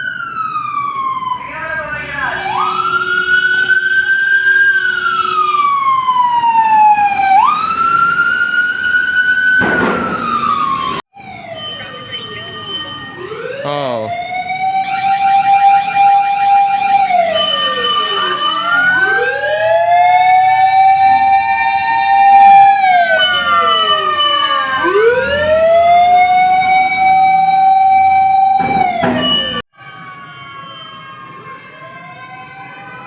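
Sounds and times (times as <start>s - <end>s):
fire truck sirens wailing: 0.0s - 33.0s
steady high tone: 13.6s - 14.2s.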